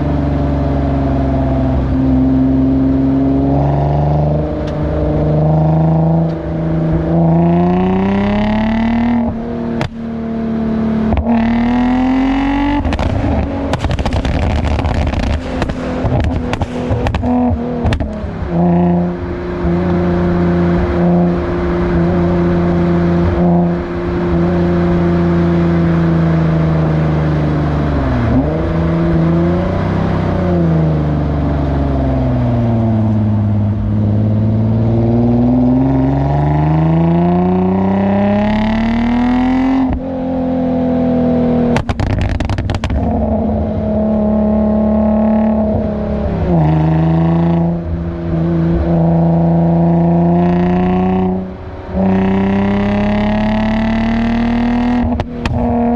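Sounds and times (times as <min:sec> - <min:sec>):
car exhaust note accelerating: 0:00.0 - 0:55.9
exhaust overrun crackles: 0:12.8 - 0:18.2, 0:41.8 - 0:43.1.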